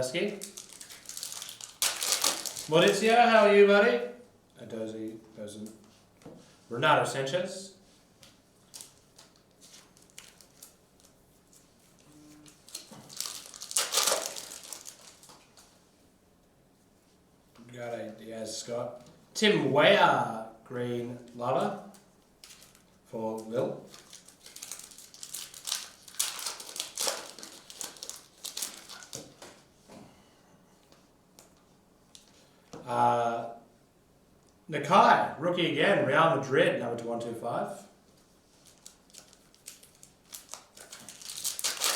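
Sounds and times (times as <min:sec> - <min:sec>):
foil wrapper crinkling and tearing: 0:00.3 - 0:03.1, 0:08.6 - 0:11.2, 0:12.4 - 0:15.6, 0:22.4 - 0:23.0, 0:23.9 - 0:29.6, 0:38.5 - 0:41.9.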